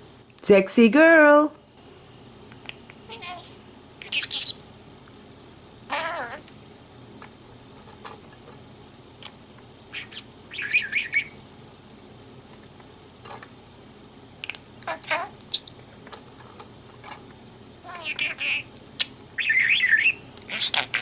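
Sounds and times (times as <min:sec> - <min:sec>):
budgerigar chirping: 0:04.0 - 0:04.6, 0:09.9 - 0:11.4, 0:17.9 - 0:21.0.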